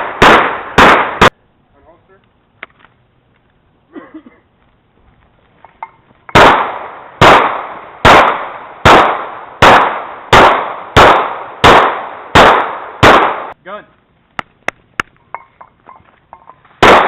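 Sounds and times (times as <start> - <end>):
handgun shots echoing: 6.3 - 13.6, 16.8 - 17.0.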